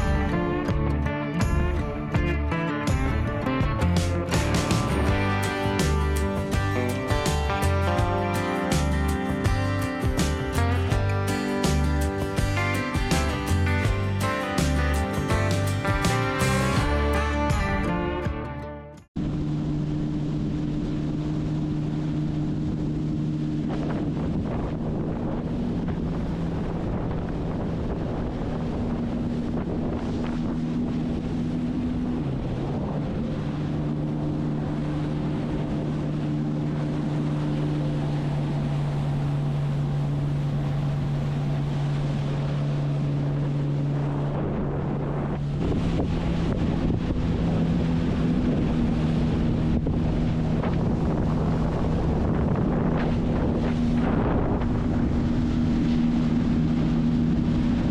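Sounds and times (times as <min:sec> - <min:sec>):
watercraft engine running: 0:00.0 - 0:57.9
water rushing past: 0:19.2 - 0:57.9
wind buffeting microphone: 0:20.2 - 0:57.9.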